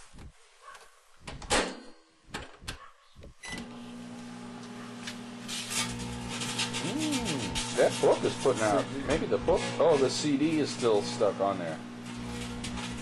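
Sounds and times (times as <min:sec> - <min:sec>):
microwave oven humming: 0:03.4 - 0:13.0
rapid electrical arcing crackle: 0:05.2 - 0:13.0.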